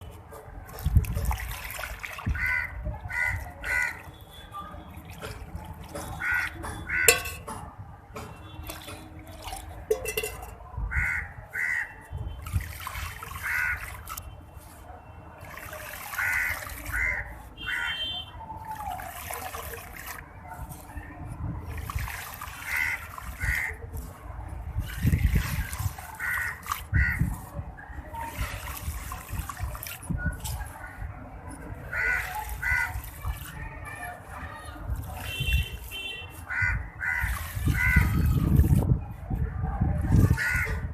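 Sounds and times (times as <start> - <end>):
wet mixture pouring and splattering: 8.6 - 10.6, 12.1 - 14.8, 15.4 - 30.7, 31.6 - 38.9
crows cawing: 10.9 - 11.9, 22.7 - 23.7, 26.2 - 27.2, 31.9 - 32.9, 36.5 - 38.0, 40.4 - 40.8.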